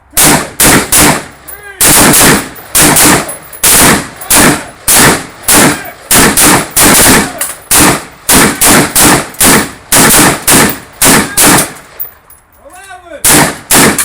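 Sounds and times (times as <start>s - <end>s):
rifle single shots: 0.2s - 12.0s, 13.2s - 14.0s.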